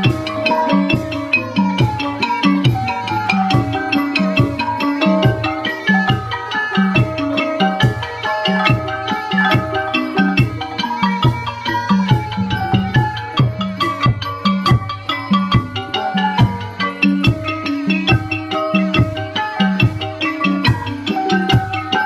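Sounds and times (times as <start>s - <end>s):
steady drum strokes: 0.0s - 17.5s
struck pitched melody: 0.0s - 22.0s.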